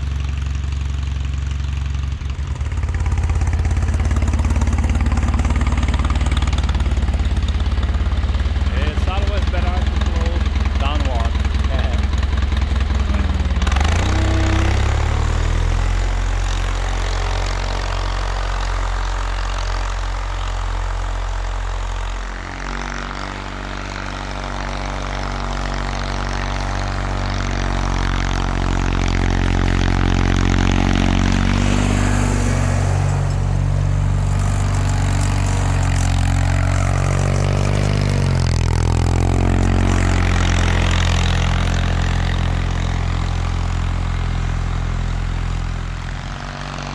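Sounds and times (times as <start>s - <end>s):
garden tractor engine running: 0.0s - 46.9s.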